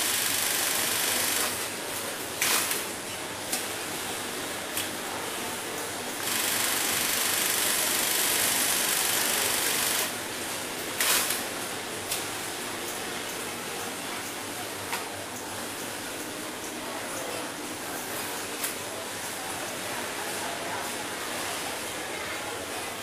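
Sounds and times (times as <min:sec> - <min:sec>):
sewing machine stitching: 0:00.0 - 0:01.6, 0:06.2 - 0:10.1.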